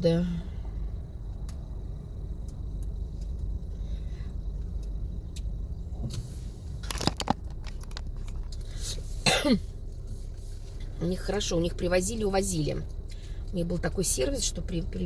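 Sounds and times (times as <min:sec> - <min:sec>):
car road and engine rumble: 0:00.0 - 0:15.0.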